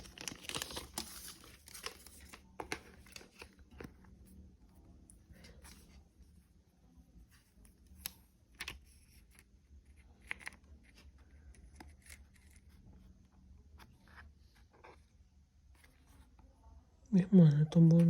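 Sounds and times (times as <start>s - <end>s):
packaging scratching and rustling: 0.0s - 3.9s.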